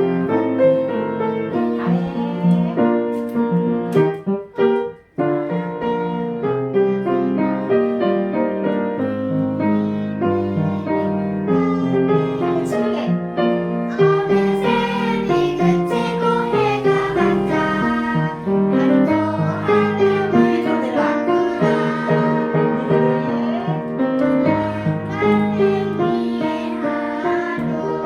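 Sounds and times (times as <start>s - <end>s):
children singing softly: 0.0s - 28.0s
piano accompaniment: 0.0s - 28.0s.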